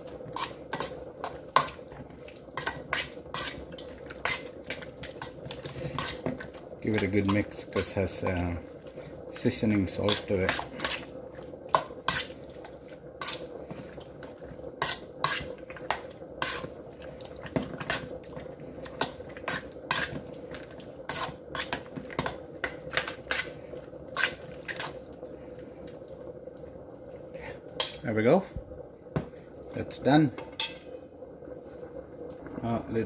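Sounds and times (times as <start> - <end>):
faint steady hum: 0.0 - 33.0
utensil scraping a bowl: 2.6 - 4.5.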